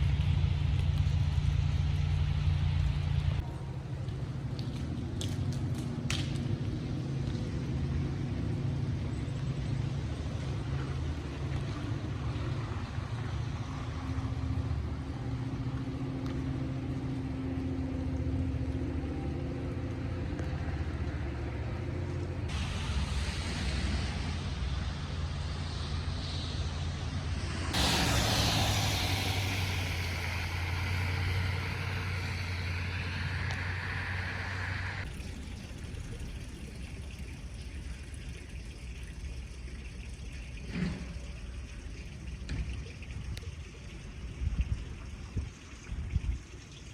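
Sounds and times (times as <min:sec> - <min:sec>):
car engine and road rumble: 0:00.0 - 0:43.2
tyre hiss: 0:22.5 - 0:35.0.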